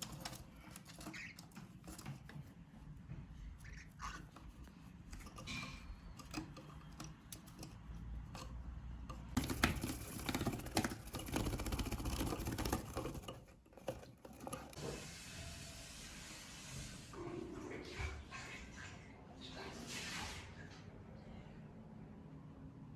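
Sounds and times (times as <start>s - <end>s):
bird claws scratching and clicking: 0.0s - 14.8s.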